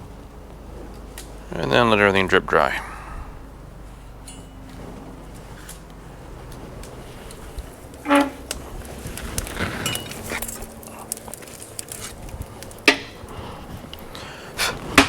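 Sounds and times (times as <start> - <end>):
light metal rattling: 3.5 - 14.1
steel tools clanking together: 4.2 - 4.7, 8.0 - 8.5
sharp ringing metal strikes: 4.3 - 4.6.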